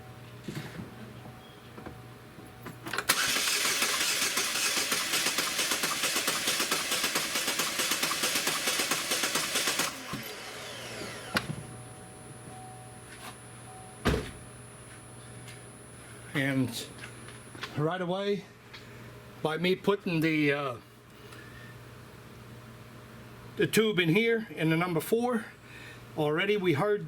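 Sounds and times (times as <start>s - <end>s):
starter cranking engine: 3.0s - 10.3s
thump: 14.0s - 14.4s.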